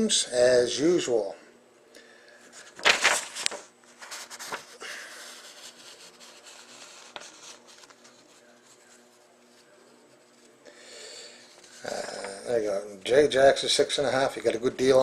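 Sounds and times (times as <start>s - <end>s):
faint steady hum: 0.0s - 15.0s
faint rubbing: 3.9s - 10.6s.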